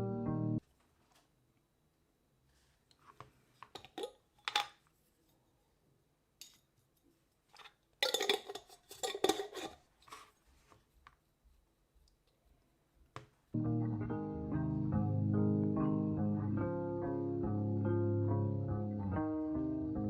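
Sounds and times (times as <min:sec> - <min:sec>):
objects clinking against glass: 0:08.0 - 0:09.8.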